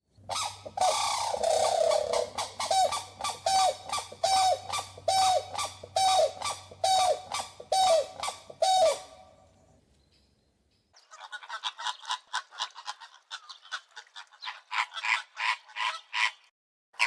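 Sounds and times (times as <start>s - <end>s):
bird buzzy calls: 0.3s - 9.6s.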